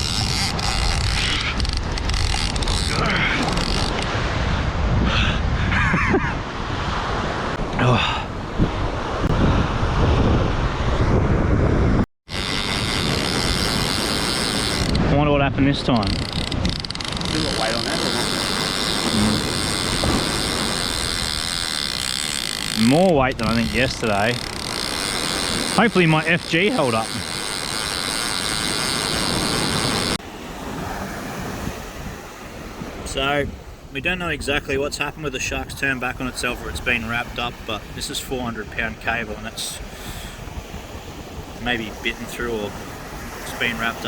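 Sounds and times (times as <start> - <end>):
fishing reel ratcheting whir: 0.0 - 4.1, 12.3 - 15.0, 16.0 - 30.2
wind buffeting microphone: 0.0 - 44.0
breaking surf: 12.3 - 44.0.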